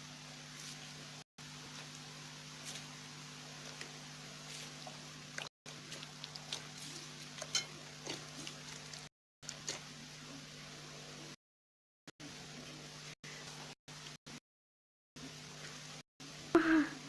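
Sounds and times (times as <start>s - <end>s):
low electrical hum: 0.0s - 11.4s
slime squelching and crackling: 4.5s - 9.8s.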